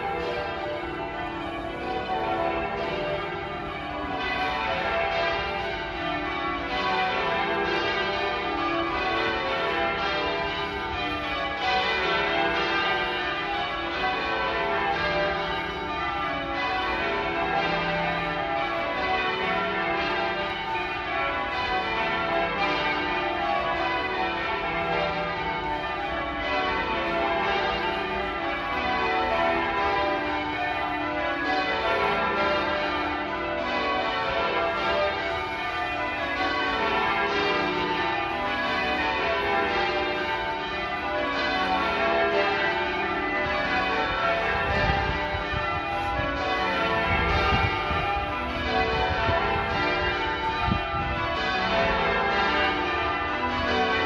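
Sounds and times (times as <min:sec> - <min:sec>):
church bells change ringing: 0:00.0 - 0:54.0.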